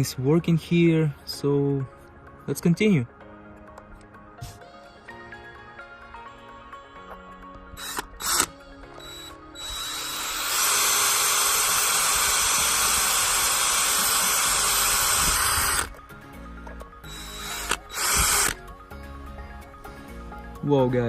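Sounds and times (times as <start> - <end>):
background music: 0.0 - 21.0
cordless drill grinding: 7.8 - 16.0, 17.0 - 18.7.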